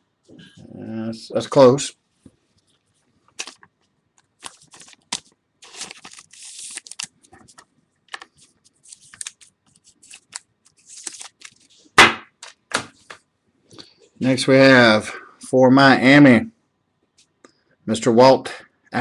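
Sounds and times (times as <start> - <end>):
cards and plastic holders handled: 2.2 - 13.3
sharp knock: 12.0 - 12.9.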